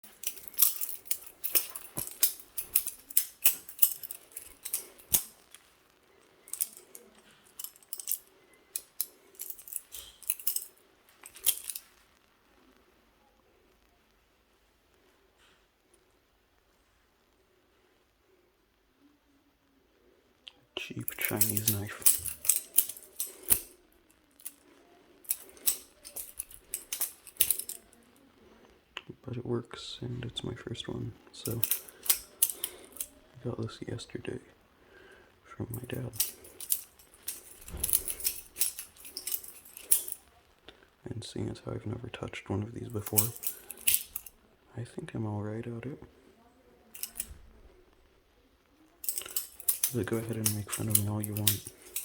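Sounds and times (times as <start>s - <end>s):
butterfly knife handles clacking: 0.0s - 5.7s, 6.5s - 11.9s, 21.0s - 28.1s, 31.4s - 33.2s, 35.7s - 40.3s, 42.9s - 44.4s, 47.0s - 47.4s, 49.0s - 52.0s.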